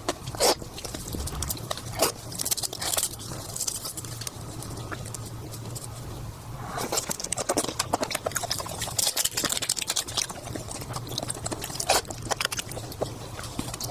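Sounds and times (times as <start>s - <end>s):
wet chewing and lip-smacking: 6.9s - 13.9s.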